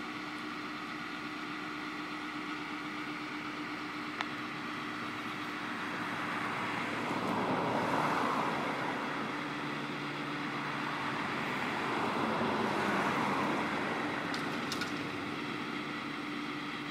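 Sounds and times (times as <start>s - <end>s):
engine running: 0.0s - 16.9s
vehicles passing: 3.6s - 16.9s.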